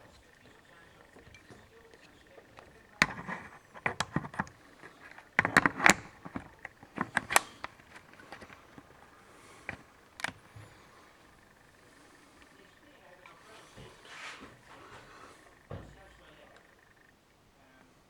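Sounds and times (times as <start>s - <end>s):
hard plastic parts clattering: 0.0s - 17.2s.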